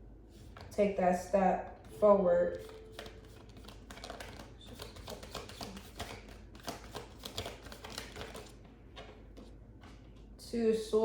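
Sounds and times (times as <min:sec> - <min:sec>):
cards being shuffled: 0:02.5 - 0:10.3.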